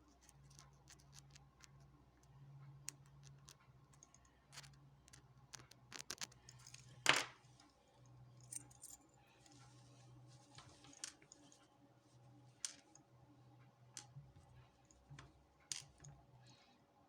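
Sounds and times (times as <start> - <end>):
small metallic clicks and taps: 0.0 - 6.8, 13.9 - 14.3.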